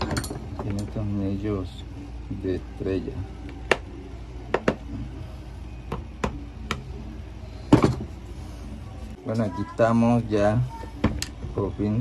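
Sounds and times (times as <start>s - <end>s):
parts clattering: 0.0s - 1.0s.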